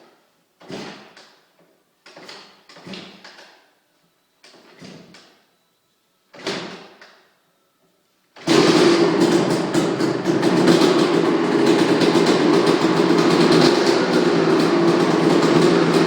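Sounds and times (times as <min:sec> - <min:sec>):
engine kick-start swoosh: 0:08.5 - 0:16.0.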